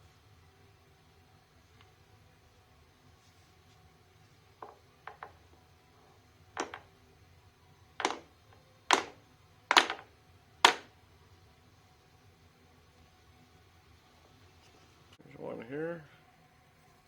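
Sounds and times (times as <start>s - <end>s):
hammer tapping on metal: 10.7s - 10.9s.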